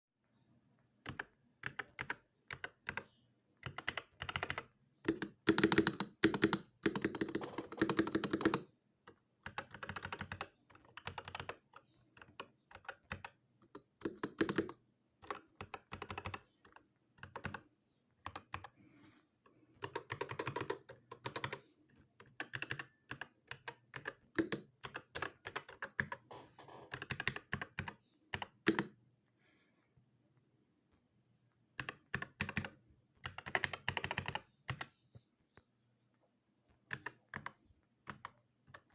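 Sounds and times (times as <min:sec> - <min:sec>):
mechanical keyboard typing: 0:01.0 - 0:17.6, 0:18.2 - 0:18.7, 0:19.8 - 0:29.0, 0:31.8 - 0:34.9, 0:36.9 - 0:38.9.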